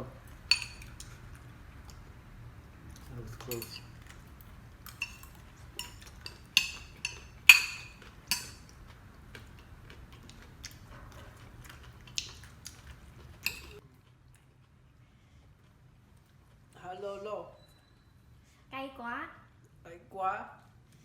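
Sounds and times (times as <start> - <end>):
cutlery clinking against a dish: 0.5 - 1.2, 3.0 - 4.2, 4.9 - 8.8, 13.4 - 13.8.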